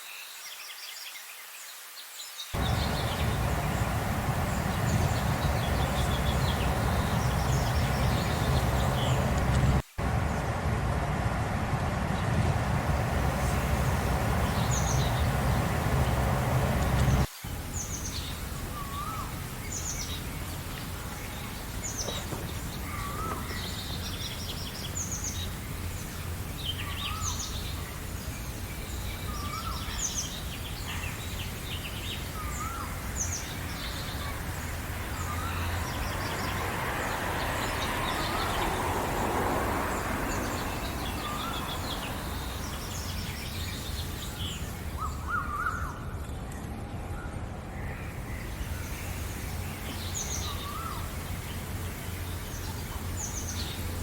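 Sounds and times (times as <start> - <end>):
lower bird call: 2.6 - 17.3
low background rumble: 2.6 - 17.6
rush of hiss: 2.6 - 20.2
birds chirping: 2.6 - 46.5, 47.6 - 54.0.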